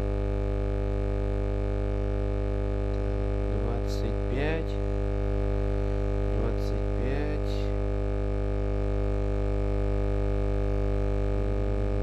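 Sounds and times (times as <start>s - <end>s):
droning hum of held tones: 0.0s - 12.0s
person speaking a word: 6.4s - 7.8s.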